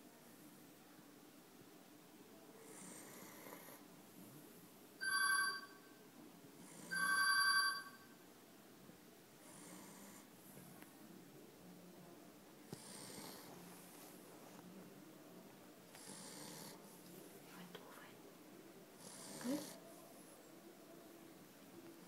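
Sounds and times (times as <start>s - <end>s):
soft slow snoring: 2.6s - 3.9s, 9.4s - 10.3s, 12.7s - 13.6s, 15.9s - 17.0s, 19.0s - 19.8s.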